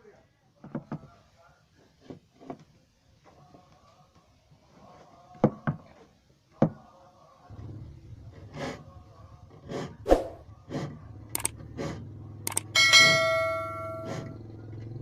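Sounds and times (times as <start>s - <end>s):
saw blade ringing faintly: 12.8s - 14.5s.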